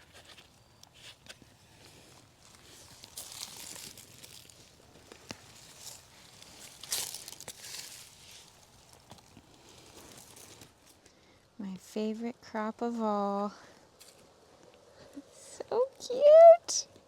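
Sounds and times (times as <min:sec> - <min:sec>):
digging and scraping soil: 0:00.0 - 0:11.0.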